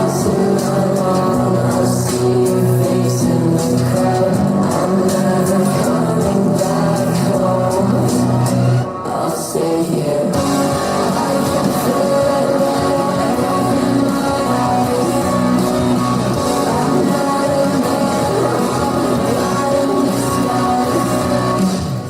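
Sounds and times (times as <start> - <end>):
live rock band playing: 10.3 - 22.0.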